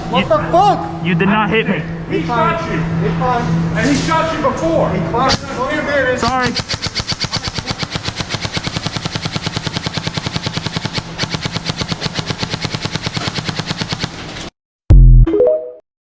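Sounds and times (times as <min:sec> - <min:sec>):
airsoft gun rapid burst: 0:06.2 - 0:14.5.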